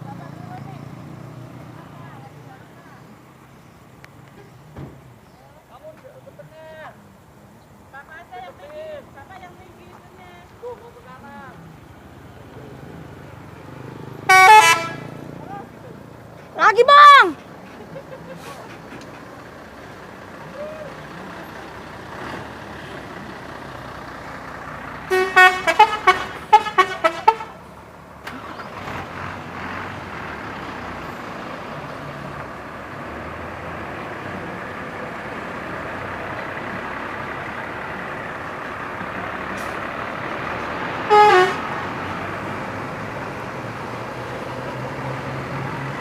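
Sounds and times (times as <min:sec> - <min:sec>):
vehicle rumble: 0:00.0 - 0:46.0
multi-tone musical bus horn: 0:14.2 - 0:15.2, 0:25.0 - 0:27.7, 0:41.0 - 0:41.8.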